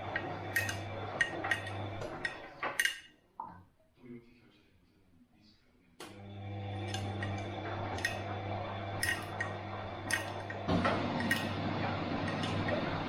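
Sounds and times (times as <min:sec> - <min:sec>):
water sloshing in drum: 0:00.0 - 0:02.8
washing machine motor hum: 0:00.0 - 0:03.0, 0:06.0 - 0:13.0.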